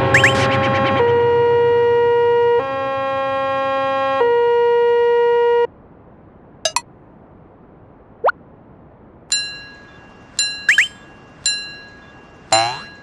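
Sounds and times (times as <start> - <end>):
two-pitch electronic warning tone: 0.0 - 1.1, 10.7 - 11.0, 12.5 - 12.9.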